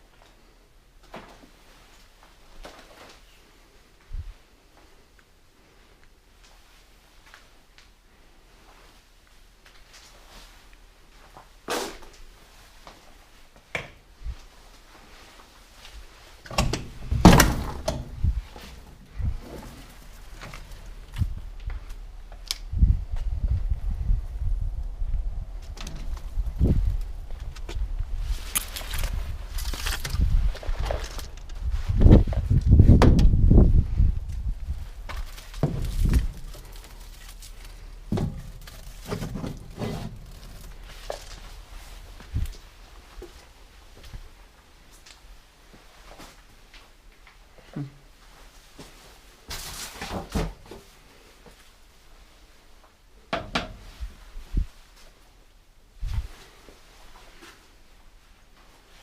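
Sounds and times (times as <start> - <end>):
footsteps dull thuds: 15.8 - 44.4
heavy knocks and thuds: 16.5 - 18.6, 32.0 - 33.4, 35.1 - 36.6, 38.1 - 40.2.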